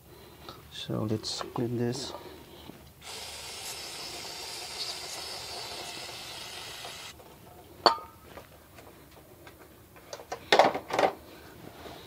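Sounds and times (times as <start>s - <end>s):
hiss of pressurised spray: 3.0s - 7.1s.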